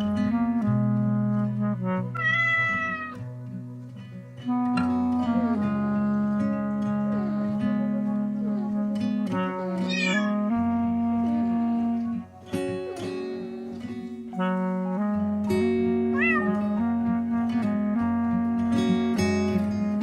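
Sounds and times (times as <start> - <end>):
background music with held chords: 0.0 - 20.0
cat meowing: 2.1 - 3.2, 9.8 - 10.4, 16.1 - 16.8.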